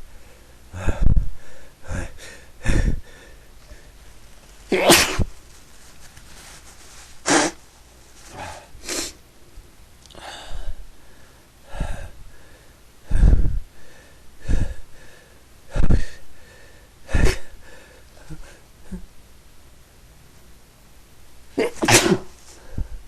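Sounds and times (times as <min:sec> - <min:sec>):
person sneezing: 0:04.7 - 0:05.3, 0:07.2 - 0:07.6, 0:08.3 - 0:09.2, 0:17.1 - 0:17.5, 0:21.6 - 0:22.4.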